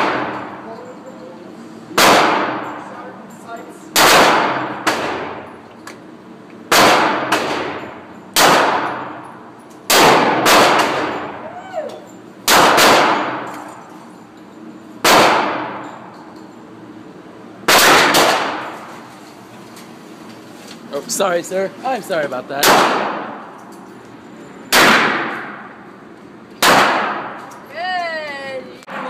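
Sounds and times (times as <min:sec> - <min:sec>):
handgun shots echoing: 0:02.0 - 0:02.6, 0:04.0 - 0:05.4, 0:26.6 - 0:27.6.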